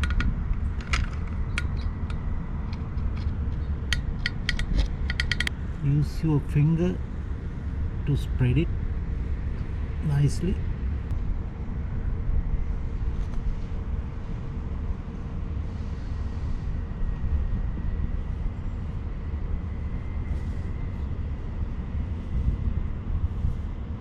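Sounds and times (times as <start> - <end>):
low outdoor rumble: 0.0 - 24.0
faint thin whine: 12.2 - 24.0.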